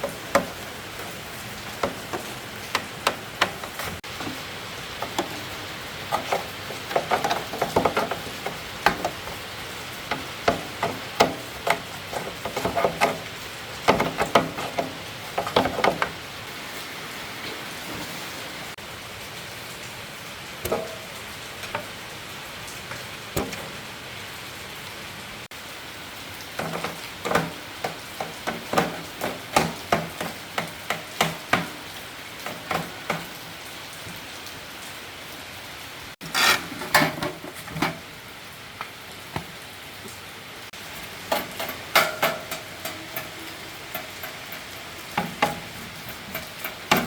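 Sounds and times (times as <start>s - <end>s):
sharp clicks and light knocks: 0.0s - 16.2s, 20.6s - 22.1s, 22.7s - 23.9s, 26.5s - 34.2s, 41.0s - 47.0s
rain hissing: 0.0s - 47.0s.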